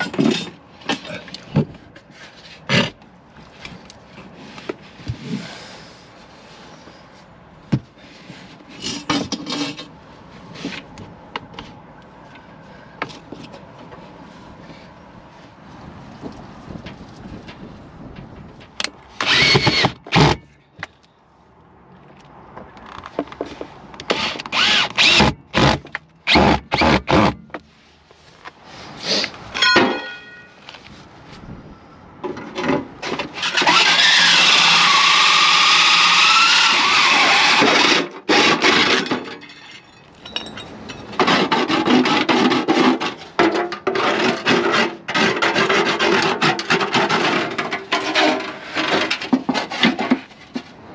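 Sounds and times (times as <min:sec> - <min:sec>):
power drill running: 0:19.2 - 0:20.3, 0:33.4 - 0:38.0
parts being handled: 0:27.4 - 0:31.2, 0:38.6 - 0:44.7, 0:46.2 - 0:50.9.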